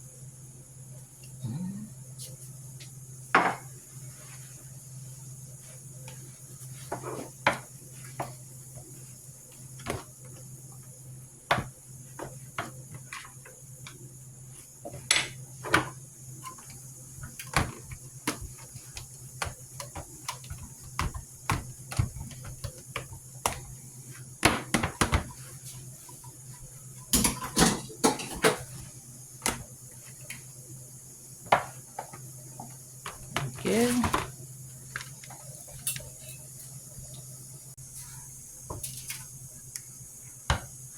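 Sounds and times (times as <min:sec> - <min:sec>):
dishes and utensils clinking: 0:27.2 - 0:28.7.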